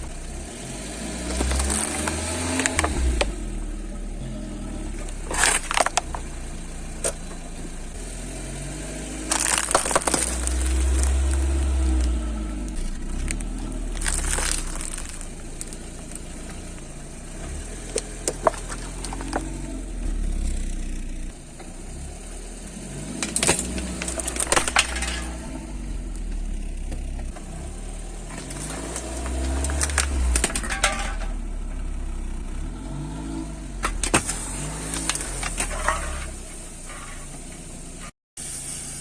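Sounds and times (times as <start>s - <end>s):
car engine idling: 0.0s - 39.0s
tyres crushing crunchy objects: 1.0s - 3.6s, 4.9s - 7.4s, 8.9s - 20.2s, 23.0s - 26.3s, 27.3s - 31.3s, 33.7s - 37.3s.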